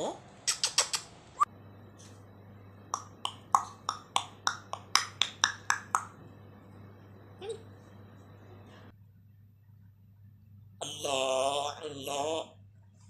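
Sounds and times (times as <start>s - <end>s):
parrot making sharp clicks: 0.4s - 1.1s.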